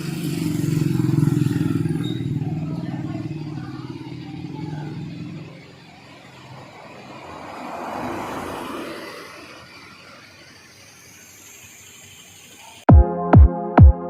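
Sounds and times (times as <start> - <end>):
motorcycle engine running: 0.0 - 7.7
road noise: 0.0 - 12.9.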